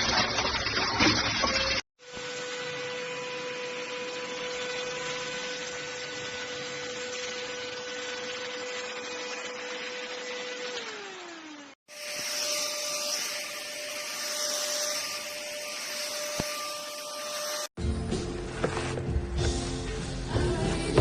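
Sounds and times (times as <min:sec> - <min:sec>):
handheld vacuum cleaner motor: 0:01.4 - 0:17.7.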